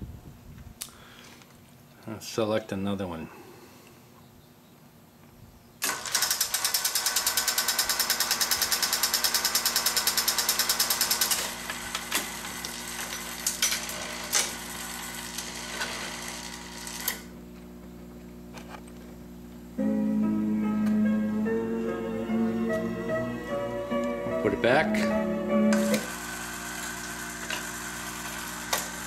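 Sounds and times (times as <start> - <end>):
jukebox steady hum: 5.2 - 29.0
mechanism whirring and clicking: 5.8 - 17.3, 25.7 - 29.0
jukebox mechanism rattling: 5.9 - 14.7.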